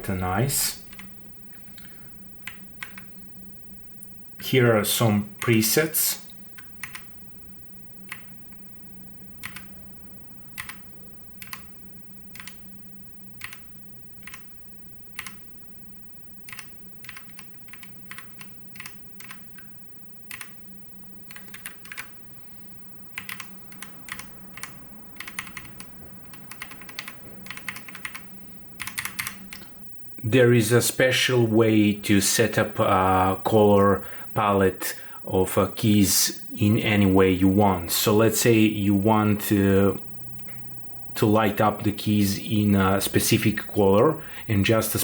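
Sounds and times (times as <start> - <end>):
mechanical keyboard key clicks: 16.5 - 19.7, 23.2 - 28.2, 28.8 - 29.7.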